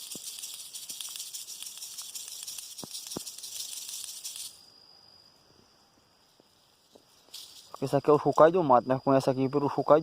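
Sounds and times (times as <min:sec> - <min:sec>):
seed pod rattle shaken: 0:00.0 - 0:04.7, 0:06.4 - 0:08.4.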